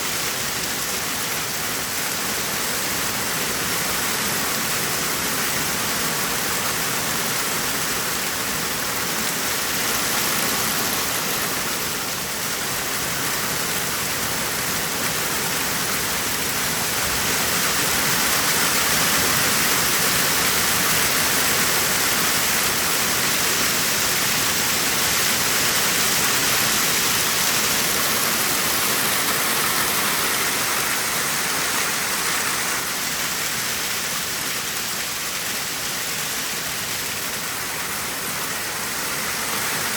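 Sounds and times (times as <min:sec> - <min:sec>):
heavy rain and hail: 0:00.0 - 0:39.9.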